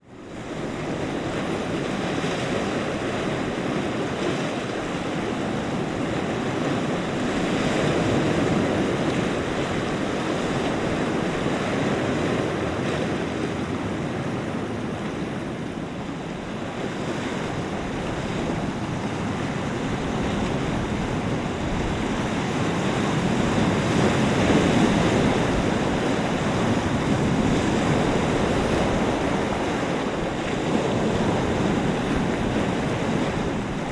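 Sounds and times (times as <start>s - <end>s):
wind blowing across microphone: 0.0s - 33.9s
waves washing on shore: 0.1s - 33.9s.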